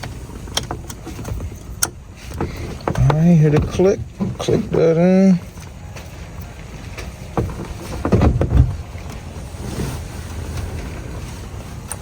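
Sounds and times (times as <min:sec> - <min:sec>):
dull knocks and handling: 0:00.0 - 0:04.8, 0:06.9 - 0:09.3.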